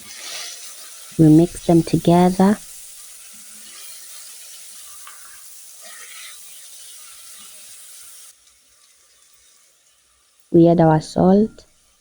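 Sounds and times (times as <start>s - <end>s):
stirring strokes in a pot: 0.0s - 10.5s
vegetables sizzling in hot oil: 0.0s - 12.0s.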